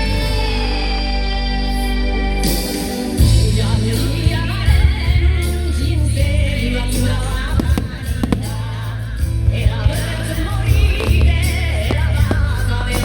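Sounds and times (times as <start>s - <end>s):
pop song with singing: 0.0s - 13.0s
sharp cracks: 7.5s - 9.2s, 10.8s - 13.0s.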